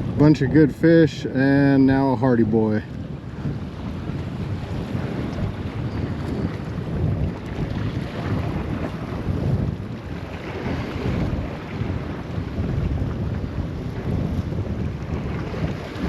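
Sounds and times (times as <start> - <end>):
wind gusting across microphone: 0.0 - 16.0.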